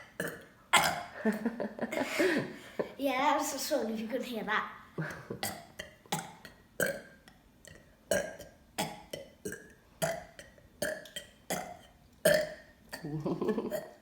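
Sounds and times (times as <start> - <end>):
person burping: 0.0 - 1.4, 5.0 - 7.2, 8.1 - 14.0.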